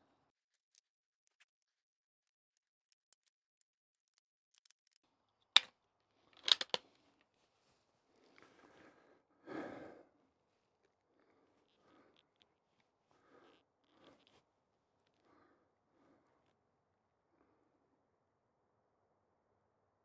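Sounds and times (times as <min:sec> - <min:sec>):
rifle bolt clicking: 0:06.4 - 0:06.8.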